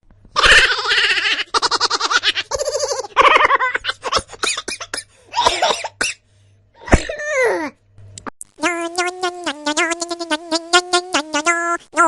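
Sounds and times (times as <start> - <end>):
laugh sound effects: 0.4 - 5.7.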